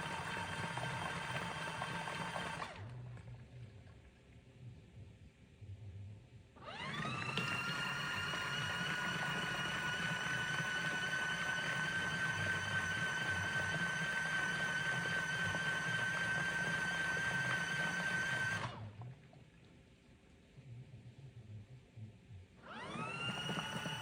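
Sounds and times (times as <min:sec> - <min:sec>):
washing machine motor whine: 0:00.0 - 0:03.8, 0:06.6 - 0:19.2, 0:22.6 - 0:24.0.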